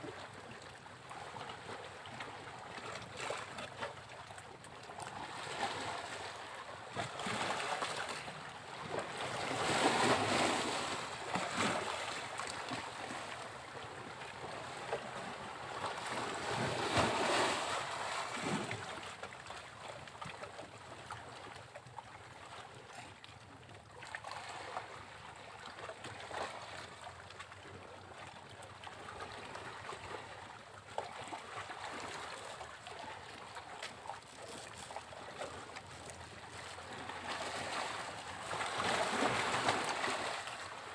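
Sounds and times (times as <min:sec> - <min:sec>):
wash of small surf: 0:05.3 - 0:13.4, 0:15.8 - 0:19.2, 0:36.8 - 0:40.9.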